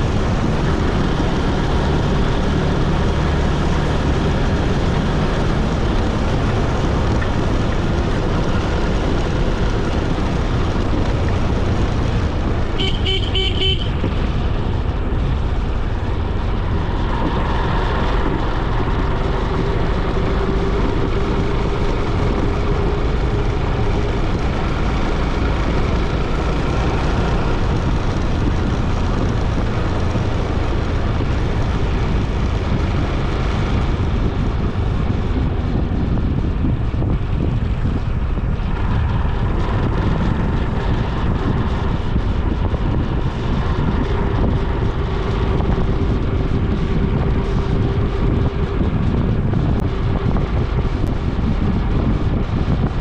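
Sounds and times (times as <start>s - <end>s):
motorbike road and wind rumble: 0.0s - 53.0s
vehicle horn short beeps: 12.8s - 14.0s.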